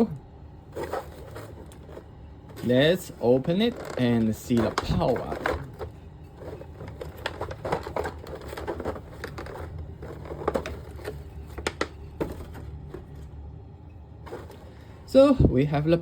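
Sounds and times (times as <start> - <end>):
plastic packaging crinkling: 0.6 - 13.4.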